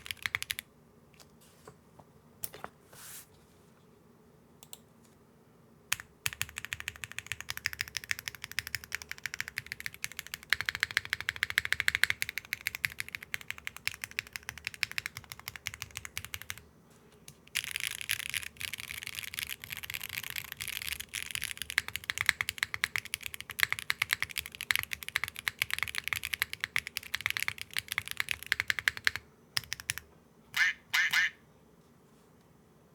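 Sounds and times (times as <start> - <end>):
fast keyboard typing: 0.0 - 0.6, 5.9 - 16.6, 17.3 - 30.0.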